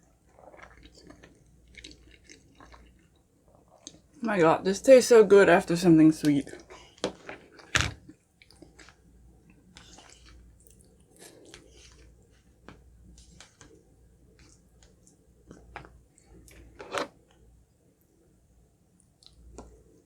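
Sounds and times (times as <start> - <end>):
person chewing food: 0.0 - 4.2, 6.5 - 17.0.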